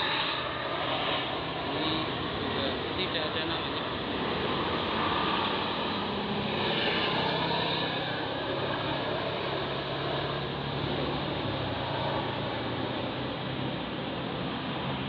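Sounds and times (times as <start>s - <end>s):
bus engine pulling up a climb: 0.0s - 15.0s
road and tyre noise: 0.0s - 15.0s.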